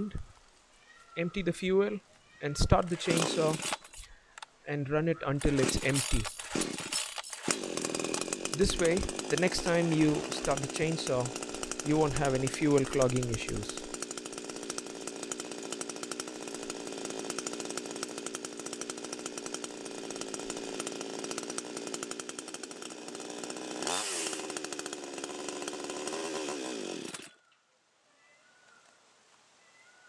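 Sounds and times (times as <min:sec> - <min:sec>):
chainsaw engine running: 0:02.8 - 0:04.5, 0:05.4 - 0:27.4.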